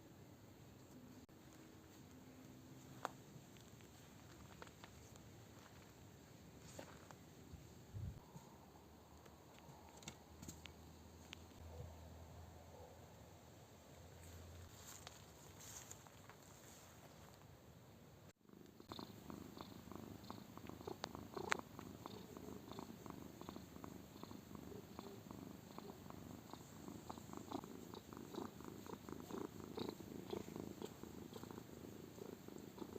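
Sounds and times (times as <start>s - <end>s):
cat purring: 18.4s - 32.9s.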